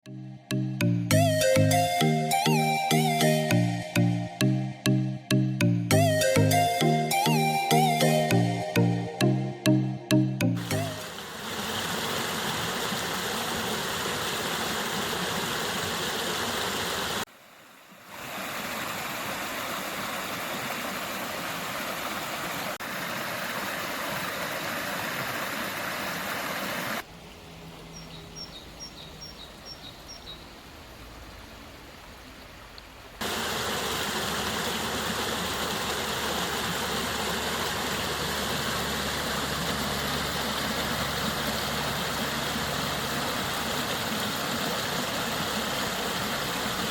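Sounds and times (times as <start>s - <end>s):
rushing water: 5.9s - 46.9s
small bird chirping: 27.8s - 30.5s.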